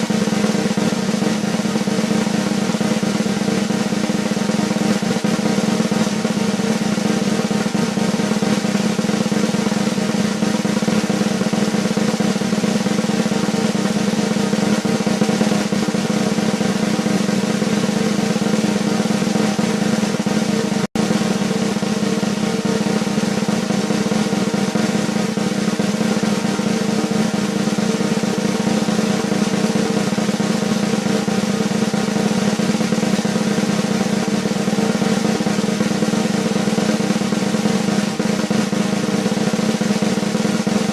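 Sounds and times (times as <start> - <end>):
drum roll: 0.0 - 40.9.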